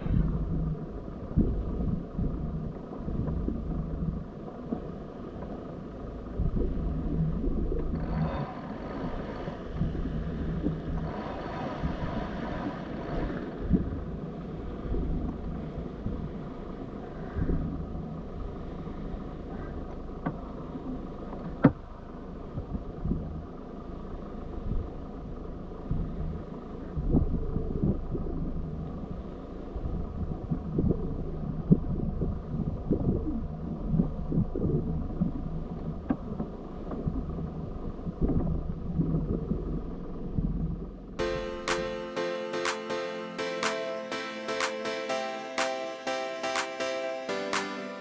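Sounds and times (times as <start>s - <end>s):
water noise from moving boat: 0.0s - 41.2s.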